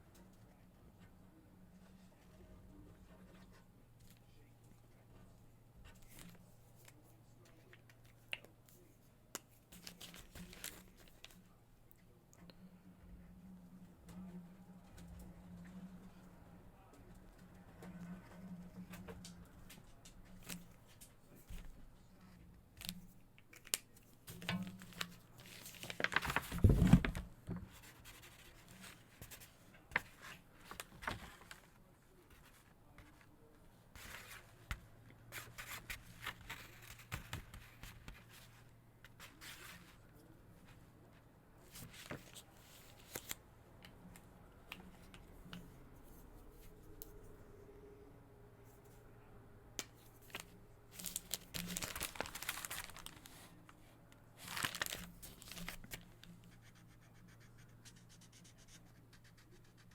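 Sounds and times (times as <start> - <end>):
markers scratching on paper: 56.4 - 59.9.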